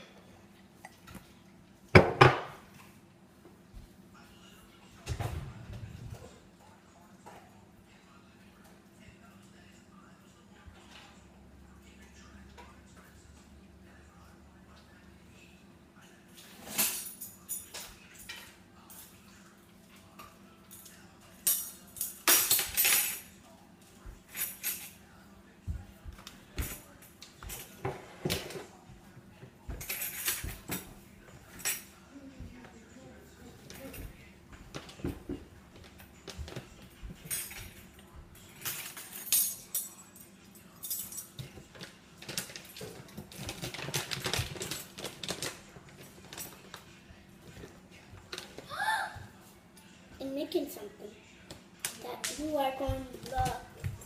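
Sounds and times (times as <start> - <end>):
kitchen things rattling and clattering: 1.9 - 2.8, 16.4 - 19.1, 21.4 - 23.4, 26.2 - 28.7, 29.4 - 32.0, 33.4 - 40.0, 40.8 - 48.6.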